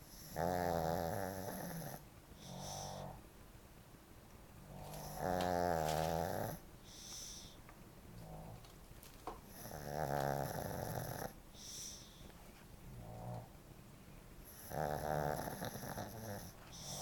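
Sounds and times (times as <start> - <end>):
dog snoring: 0.0 - 3.2, 4.6 - 7.6, 8.2 - 8.7, 9.4 - 12.2, 12.9 - 13.6, 14.4 - 17.0
dog breathing softly: 1.3 - 3.2, 4.7 - 8.6, 9.5 - 13.5, 14.4 - 17.0.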